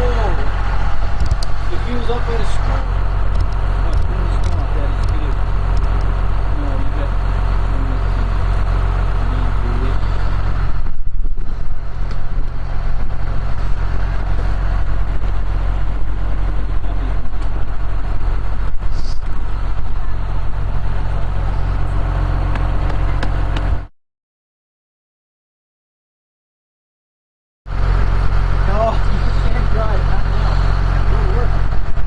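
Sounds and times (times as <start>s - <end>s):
snow-clearing machine engine humming: 0.0s - 23.9s, 27.7s - 32.0s.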